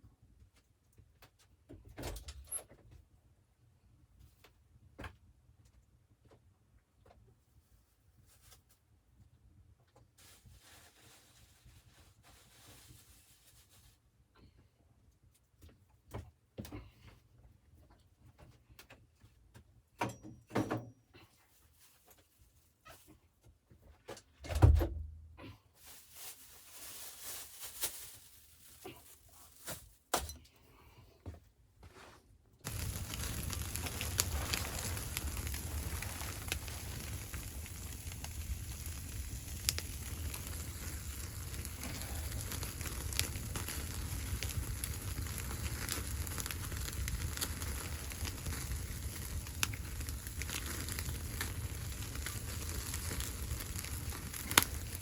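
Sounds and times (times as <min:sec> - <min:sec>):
small knocks and rustles: 0:15.1 - 0:25.0
fire crackling: 0:32.6 - 0:55.0.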